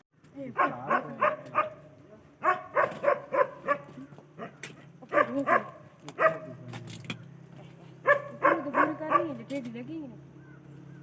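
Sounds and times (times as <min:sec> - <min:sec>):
dog barking: 0:00.5 - 0:06.6, 0:08.0 - 0:09.5.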